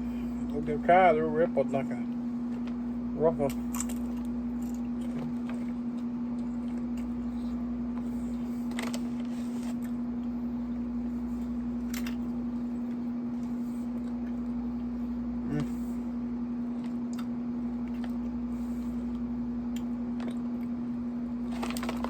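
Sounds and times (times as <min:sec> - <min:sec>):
air conditioner humming: 0:00.0 - 0:22.0
potato chips crunching: 0:21.4 - 0:22.0.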